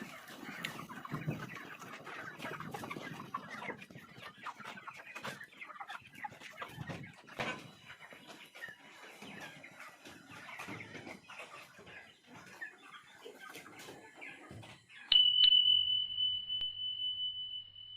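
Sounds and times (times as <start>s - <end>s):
chickens clucking: 0.0s - 15.1s.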